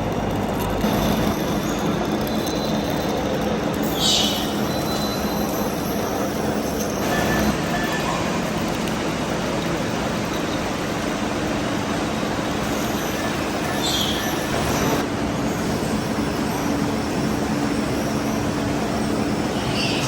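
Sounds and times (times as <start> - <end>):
heavy machinery running: 0.0 - 20.0.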